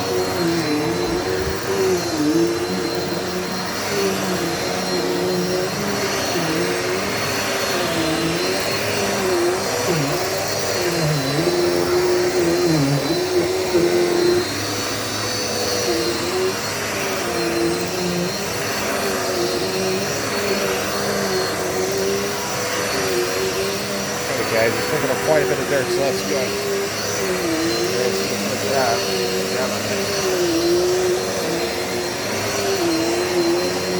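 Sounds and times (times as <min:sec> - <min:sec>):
vacuum cleaner running: 0:00.0 - 0:33.9.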